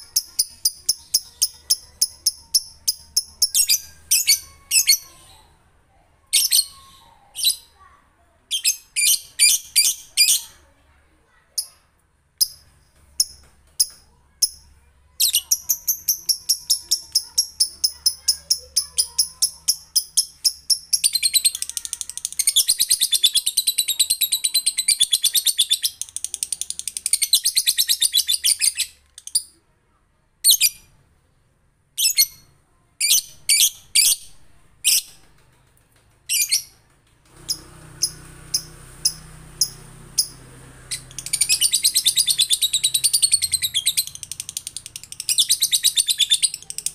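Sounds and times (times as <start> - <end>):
lovebird chattering: 0.0 - 5.2, 15.2 - 29.5, 37.5 - 46.9.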